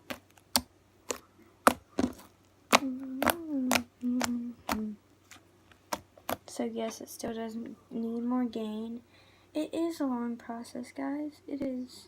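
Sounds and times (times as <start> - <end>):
slime clicking and popping: 0.0 - 4.9, 5.9 - 6.4.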